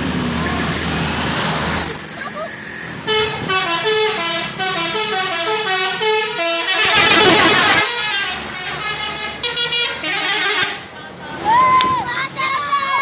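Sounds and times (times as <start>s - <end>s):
harsh horn blast: 3.0s - 10.9s
multi-tone bus horn tune: 3.0s - 11.2s.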